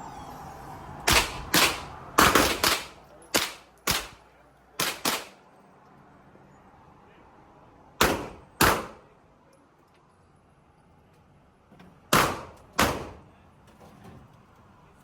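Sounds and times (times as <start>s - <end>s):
gunshots with echo: 1.1s - 4.2s, 4.8s - 5.4s.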